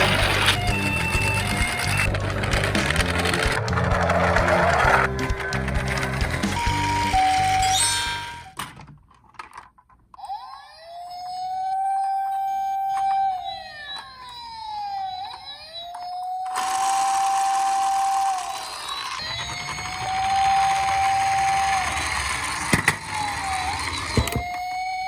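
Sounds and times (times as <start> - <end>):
toy electronic siren wailing: 0.0 - 5.1, 6.2 - 8.6, 10.2 - 25.0
music jingle: 0.0 - 8.6.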